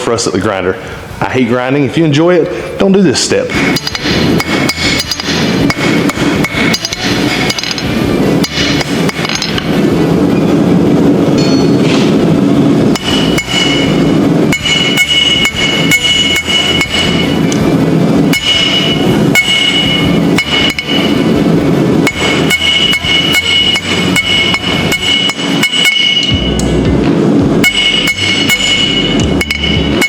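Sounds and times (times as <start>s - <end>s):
hammer striking steel on anvil: 3.5s - 10.6s, 11.3s - 26.9s, 27.6s - 30.0s.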